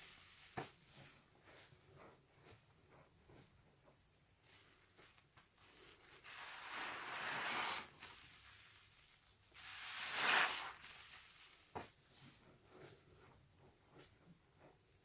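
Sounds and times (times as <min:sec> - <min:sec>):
soapy sponge being squeezed: 0:05.7 - 0:11.7.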